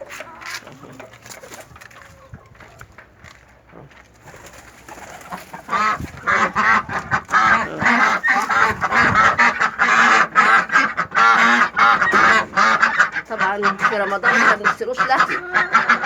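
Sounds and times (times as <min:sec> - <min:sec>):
ducks quacking: 0:00.0 - 0:16.0.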